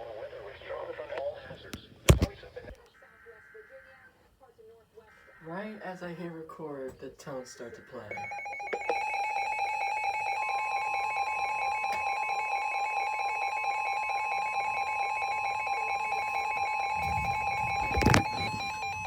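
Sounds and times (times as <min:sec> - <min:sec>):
two-pitch alarm tone: 0:08.0 - 0:19.0.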